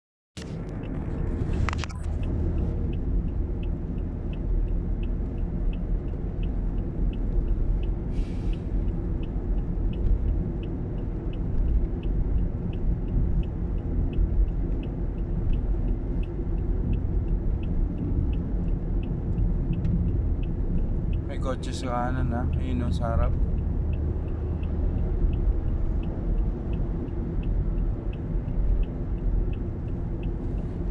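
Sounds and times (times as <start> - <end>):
car engine and tyres rumble: 0.4 - 30.9
regular high tick: 0.5 - 30.9.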